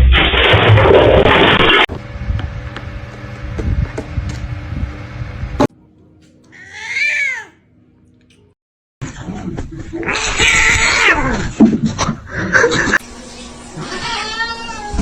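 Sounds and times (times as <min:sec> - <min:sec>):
cat meowing: 0:06.5 - 0:07.6, 0:10.0 - 0:11.3, 0:13.8 - 0:15.0.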